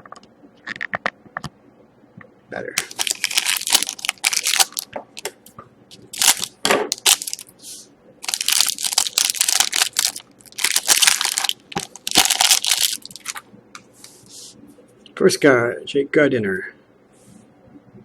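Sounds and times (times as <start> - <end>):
plastic wrapper tearing and crinkling: 2.8 - 5.3, 6.1 - 7.5, 8.2 - 13.4.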